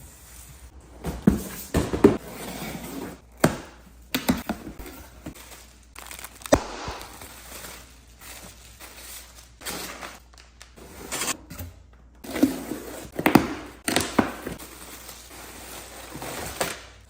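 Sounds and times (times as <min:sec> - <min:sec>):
packaging crinkling and tearing: 0:05.4 - 0:10.8.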